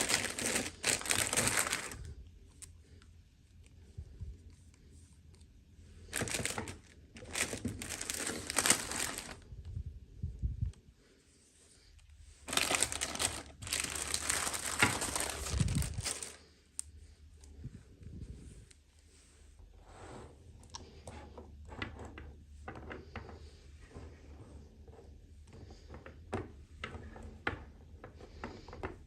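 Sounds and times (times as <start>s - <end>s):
plastic packaging crinkling and tearing: 0.0s - 2.1s, 6.1s - 9.4s, 12.4s - 16.4s.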